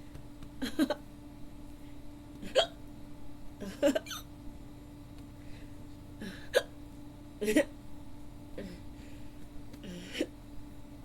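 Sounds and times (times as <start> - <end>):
faint steady hum: 0.0 - 11.0
woman hiccuping: 2.4 - 2.8, 6.2 - 6.8.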